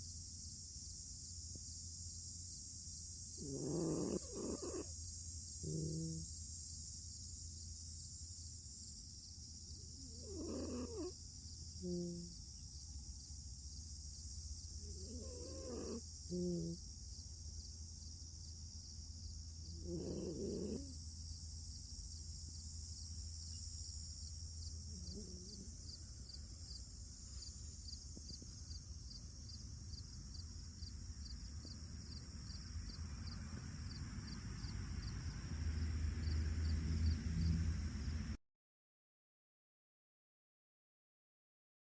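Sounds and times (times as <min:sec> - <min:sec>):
fox snoring: 0:03.4 - 0:05.0, 0:05.6 - 0:06.3, 0:09.9 - 0:11.2, 0:11.8 - 0:12.4, 0:14.8 - 0:16.8, 0:19.7 - 0:21.0, 0:24.8 - 0:25.9.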